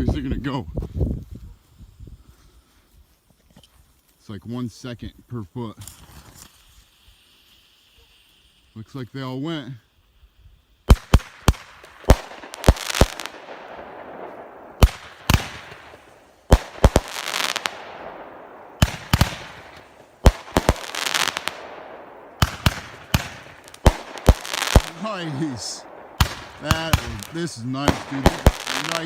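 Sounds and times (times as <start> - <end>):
firework hiss: 1.4 - 29.0
roman candles firing: 10.9 - 29.0.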